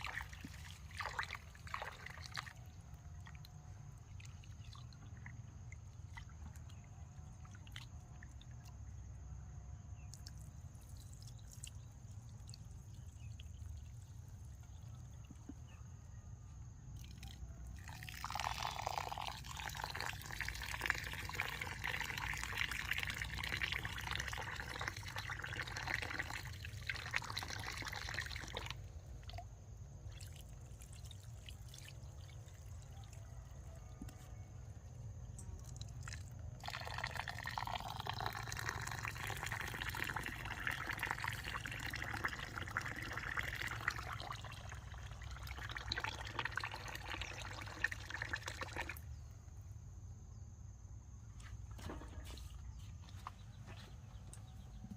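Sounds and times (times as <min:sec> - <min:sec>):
water pouring and splashing: 0:00.0 - 0:08.6, 0:17.0 - 0:49.0, 0:51.4 - 0:54.8.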